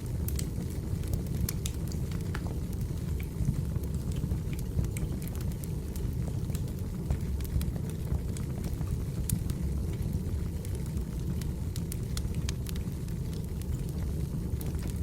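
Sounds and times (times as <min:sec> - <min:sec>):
low rumble of flame: 0:00.0 - 0:15.0
wood fire crackling: 0:00.0 - 0:15.0.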